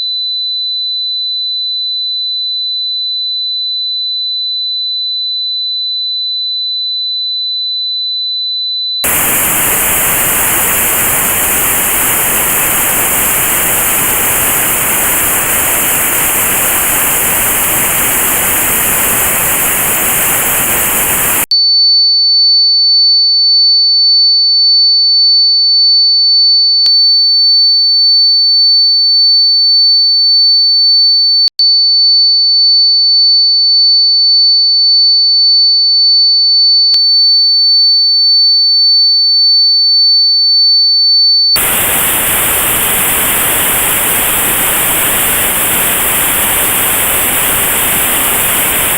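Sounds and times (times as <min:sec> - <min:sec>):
high-pitched pure tone: 0:09.0 - 0:21.5, 0:41.6 - 0:48.9
pulsing pure tone: 0:09.0 - 0:21.5, 0:41.6 - 0:48.9
notched white noise hiss: 0:09.1 - 0:21.5, 0:41.6 - 0:48.9.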